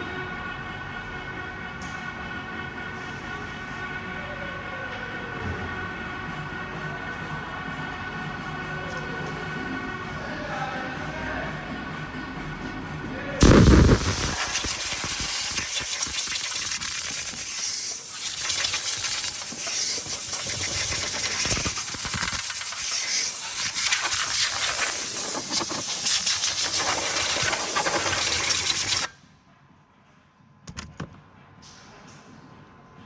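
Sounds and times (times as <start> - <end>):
loud steady hissing: 13.4 - 29.1.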